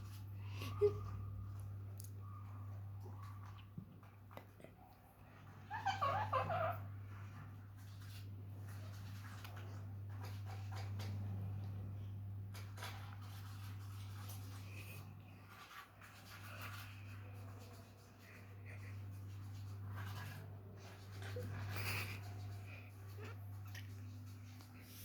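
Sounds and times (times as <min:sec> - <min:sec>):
parrots scratching and tapping: 0:12.5 - 0:17.8.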